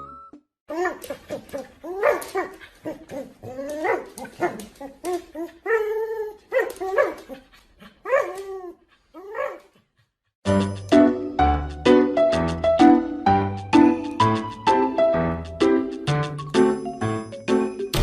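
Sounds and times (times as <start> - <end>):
music: 0.0 - 0.5, 10.4 - 18.0
dog barking and yipping: 0.7 - 9.8.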